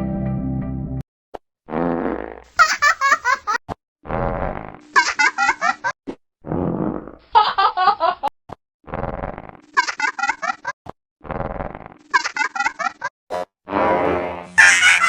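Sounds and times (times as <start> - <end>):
cartoon fart sound effect: 1.7 - 2.6, 4.0 - 5.0, 6.4 - 7.2, 8.8 - 10.1, 11.2 - 12.5, 13.3 - 15.0
cartoon character giggling: 2.5 - 3.6, 5.0 - 5.9, 9.7 - 10.7, 12.1 - 13.1, 14.6 - 15.0.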